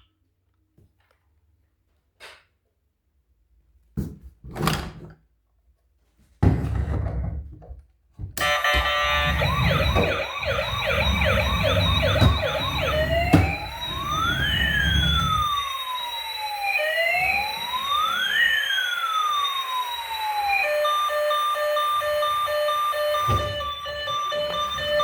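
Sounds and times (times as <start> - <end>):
toy electronic siren: 8.4 - 25.0.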